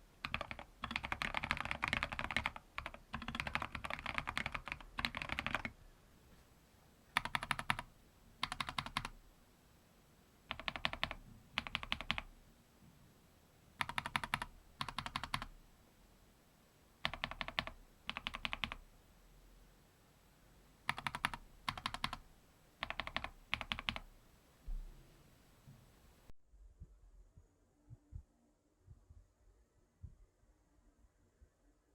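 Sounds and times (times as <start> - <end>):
mechanical keyboard typing: 0.2 - 5.7, 7.2 - 9.2, 10.5 - 12.3, 13.8 - 15.5, 17.0 - 18.8, 20.9 - 22.2, 22.8 - 24.1.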